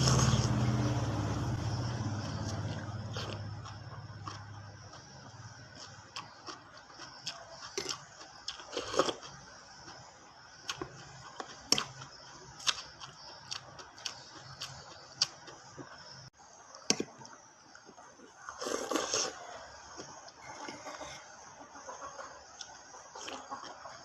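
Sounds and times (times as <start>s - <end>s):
crunchy bite: 18.5s - 19.4s.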